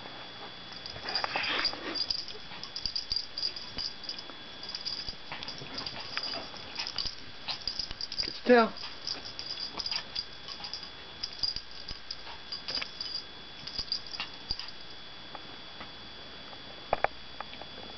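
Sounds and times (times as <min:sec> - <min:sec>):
dog claws clicking and tapping: 0:00.8 - 0:14.8.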